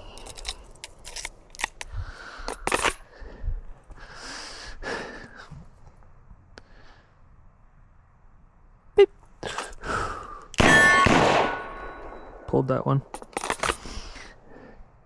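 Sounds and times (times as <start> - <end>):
revolver metallic clicks and rattles: 0.0 - 1.9, 2.5 - 3.0, 10.5 - 14.0.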